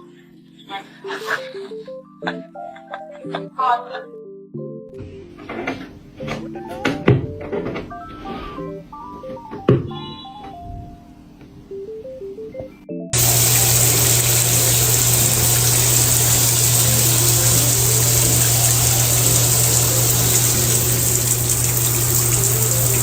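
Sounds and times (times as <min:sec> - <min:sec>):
low hum: 0:13.2 - 0:23.0.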